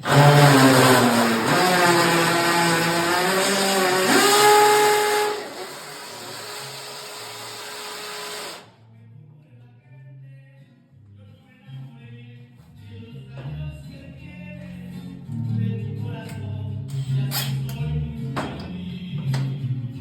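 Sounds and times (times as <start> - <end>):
power tool motor whining: 0.0 - 8.6
faint background music: 8.7 - 20.0.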